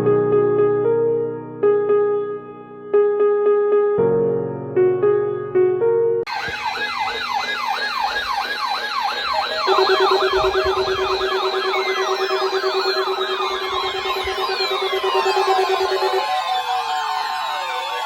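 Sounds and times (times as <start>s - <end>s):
piano music: 0.0s - 6.6s, 9.4s - 18.0s
electronic siren wailing: 6.3s - 18.0s
pulsing low tone: 9.7s - 16.2s.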